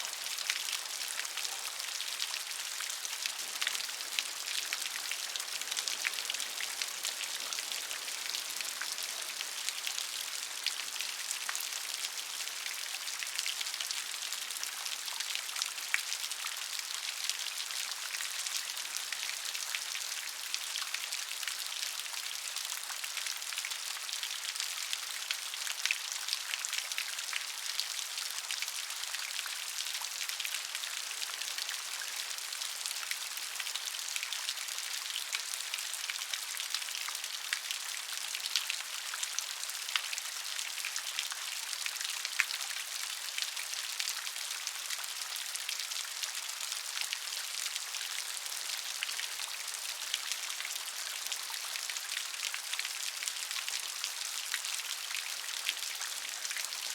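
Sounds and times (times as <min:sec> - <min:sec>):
rain pattering on surface: 0:00.0 - 0:56.9.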